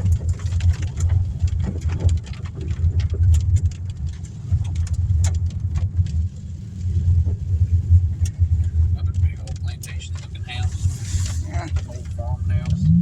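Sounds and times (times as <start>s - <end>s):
raindrops ticking on car: 0.0s - 13.0s
tyres and engine rumble: 0.0s - 13.0s.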